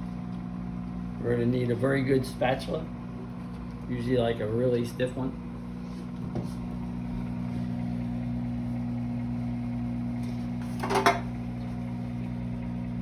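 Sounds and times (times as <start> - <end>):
microwave oven humming: 0.0 - 13.0
kitchen utensil clattering: 10.8 - 11.3.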